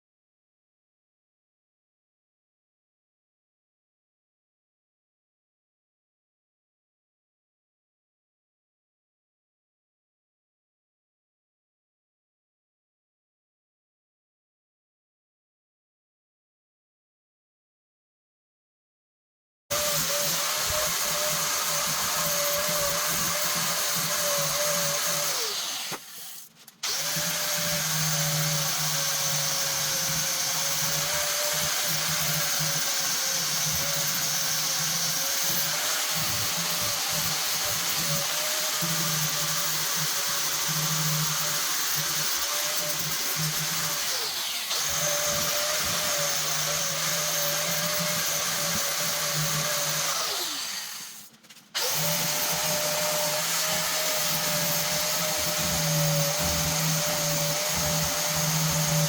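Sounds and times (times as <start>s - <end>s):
angle grinder running: 19.8s - 51.2s, 51.8s - 59.0s.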